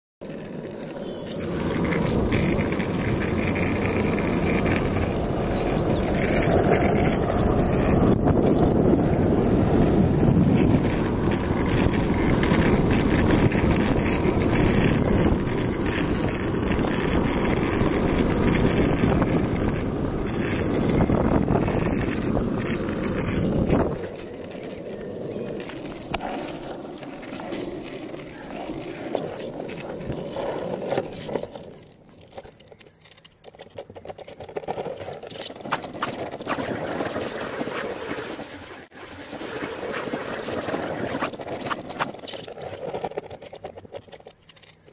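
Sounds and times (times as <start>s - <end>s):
longboard wheels rumbling on pavement: 0.2s - 44.9s
wind buffeting microphone: 1.4s - 26.3s.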